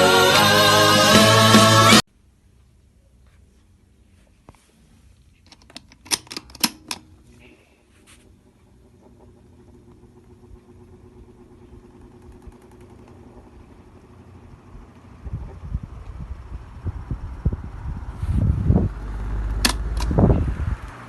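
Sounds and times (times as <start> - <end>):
electric fan motor humming: 5.5 - 21.0
sharp clicks: 19.5 - 20.2.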